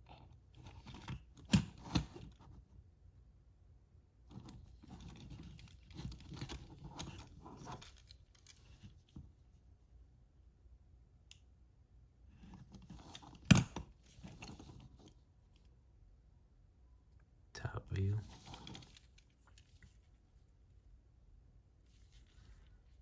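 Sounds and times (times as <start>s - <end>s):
toy trucks and packaging handled: 0.0s - 2.8s, 4.2s - 9.6s, 12.3s - 15.7s, 18.0s - 20.6s, 21.8s - 23.0s.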